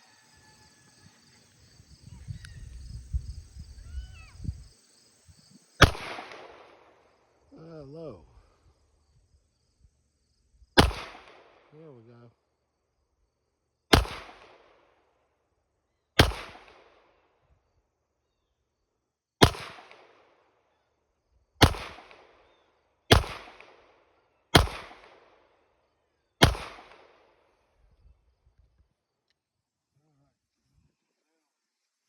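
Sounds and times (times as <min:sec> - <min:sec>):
pistol shots with echo: 0:05.8 - 0:07.1, 0:10.8 - 0:11.7, 0:13.9 - 0:14.9, 0:16.2 - 0:17.0, 0:19.4 - 0:20.2, 0:21.6 - 0:22.5, 0:23.1 - 0:23.9, 0:24.5 - 0:25.4, 0:26.4 - 0:27.3.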